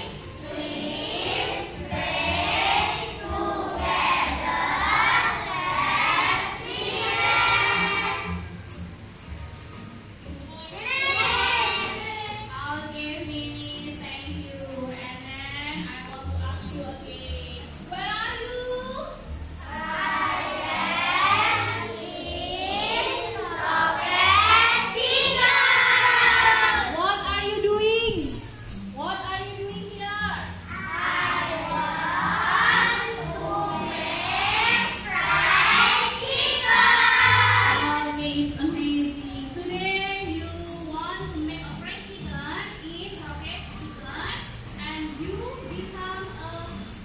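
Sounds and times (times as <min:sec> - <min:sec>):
children singing together: 0:00.0 - 0:08.4, 0:10.8 - 0:12.4, 0:19.6 - 0:27.4, 0:30.7 - 0:39.8.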